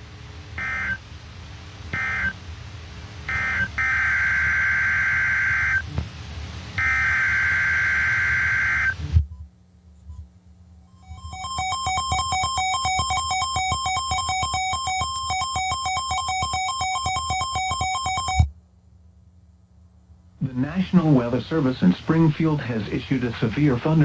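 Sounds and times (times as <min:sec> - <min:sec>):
digital alert data bursts: 0:10.9 - 0:18.5
electronic music with synth melody: 0:11.0 - 0:18.5.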